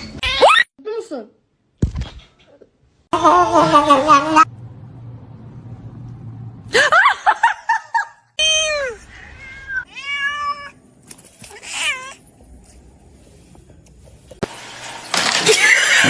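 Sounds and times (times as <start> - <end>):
cat meowing: 8.9 - 10.8.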